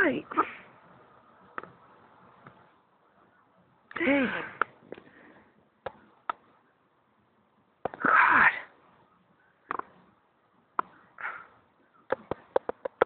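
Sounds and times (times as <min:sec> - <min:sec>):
sharp clicks: 0:12.1 - 0:13.0.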